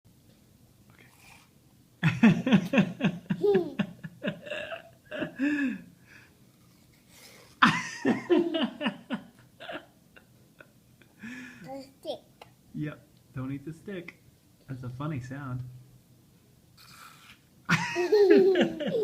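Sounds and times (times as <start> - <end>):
person laughing: 2.0 - 5.7, 17.7 - 19.0.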